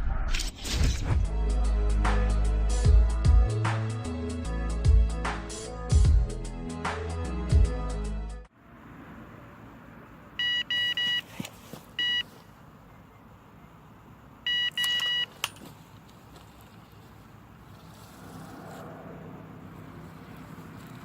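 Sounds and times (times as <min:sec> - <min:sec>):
electronic bite alarm beeping: 0:10.4 - 0:11.3, 0:12.0 - 0:12.3, 0:14.5 - 0:15.3.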